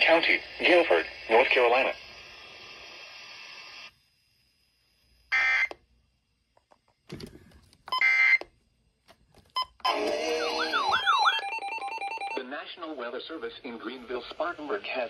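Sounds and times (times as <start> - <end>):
radio hiss: 0.0 - 4.0, 12.4 - 15.0.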